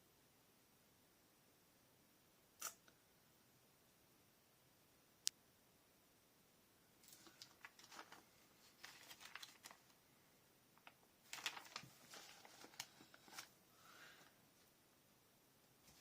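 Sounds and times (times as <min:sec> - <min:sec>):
paper rustling and tapping: 0:07.1 - 0:09.9, 0:10.8 - 0:13.5.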